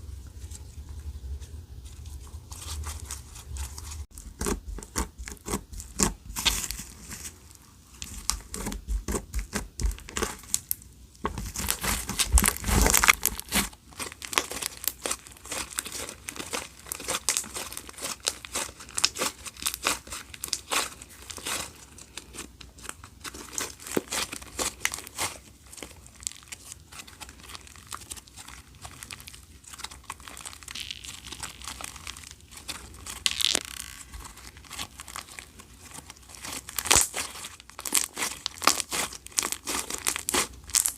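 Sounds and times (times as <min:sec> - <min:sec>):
slime squished by hand: 0:11.4 - 0:40.9.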